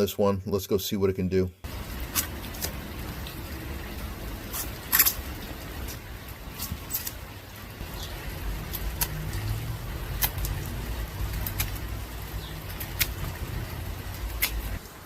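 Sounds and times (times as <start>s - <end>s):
low steady rumble: 1.6s - 15.0s
knife cutting sharp snaps: 8.7s - 9.5s, 10.1s - 12.0s, 12.6s - 13.4s, 14.1s - 14.7s.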